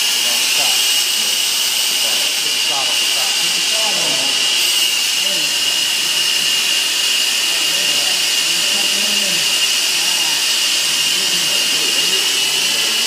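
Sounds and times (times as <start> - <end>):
gas torch hissing: 0.0 - 13.0
faint voices murmuring: 7.4 - 13.0.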